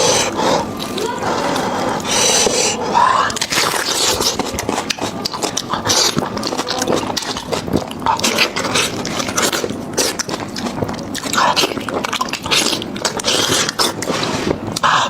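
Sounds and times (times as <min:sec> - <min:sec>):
biting and chewing: 0:00.0 - 0:15.0
mouth clicks and smacks: 0:00.0 - 0:15.0.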